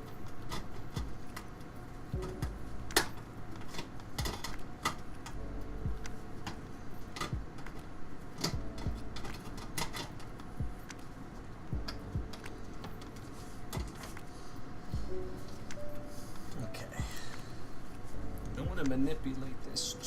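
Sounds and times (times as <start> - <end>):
hard parts clicking and tapping: 0.0 - 11.1.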